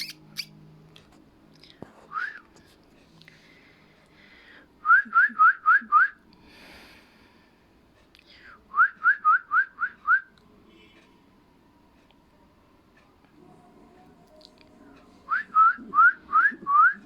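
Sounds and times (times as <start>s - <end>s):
cockatiel whistling: 0.0s - 0.5s.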